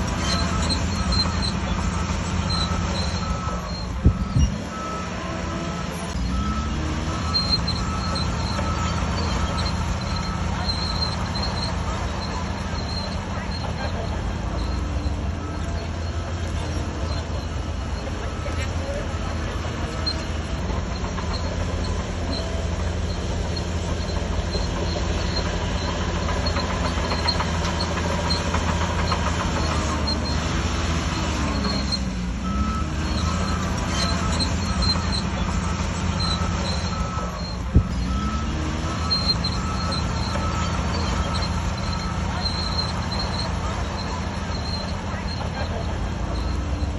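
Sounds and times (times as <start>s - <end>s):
bulldozer diesel engine under load: 0.0s - 46.9s.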